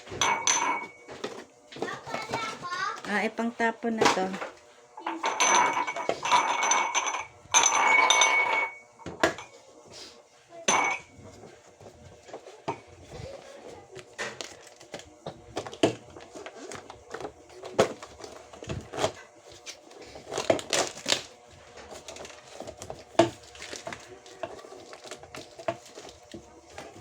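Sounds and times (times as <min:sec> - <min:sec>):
items knocking and clicking: 0:00.0 - 0:03.3, 0:03.9 - 0:09.5, 0:13.9 - 0:27.0
packaging crinkling and rustling: 0:13.8 - 0:27.0.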